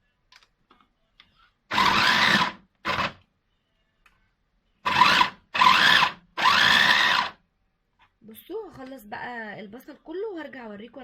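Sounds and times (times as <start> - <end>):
electric food chopper motor: 1.7 - 3.2, 4.9 - 7.4.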